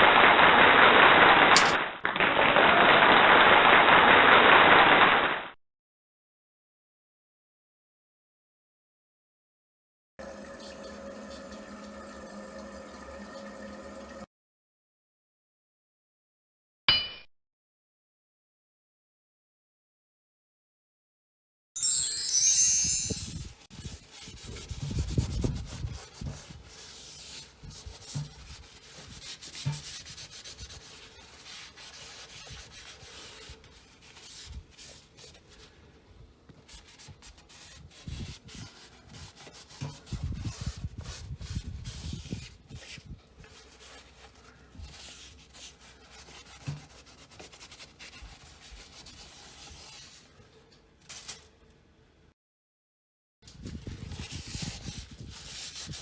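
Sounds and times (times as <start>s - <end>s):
hand rubbing and scraping: 22.8s - 51.6s, 53.7s - 56.0s.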